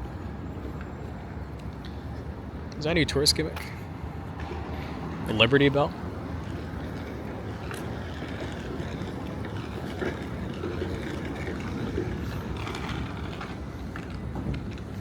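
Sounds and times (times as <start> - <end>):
city background rumble: 0.0 - 15.0.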